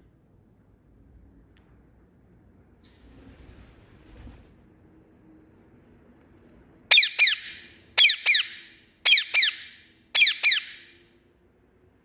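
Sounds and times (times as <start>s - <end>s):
parrot chirping: 6.9s - 10.9s.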